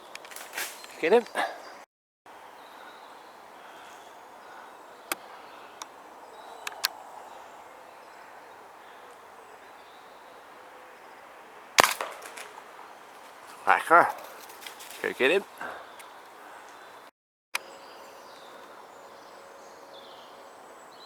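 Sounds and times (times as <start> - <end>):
air rifle shot: 11.8 - 12.6.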